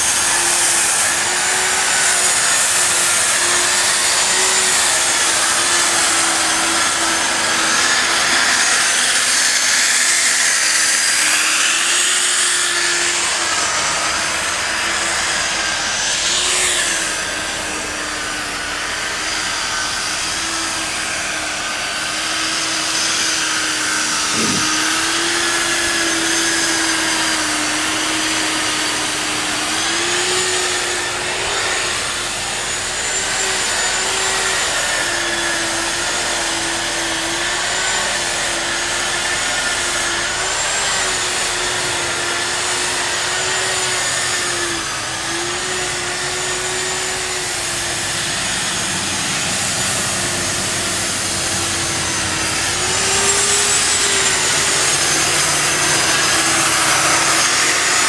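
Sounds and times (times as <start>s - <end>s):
electric grinder running: 0.0s - 58.0s.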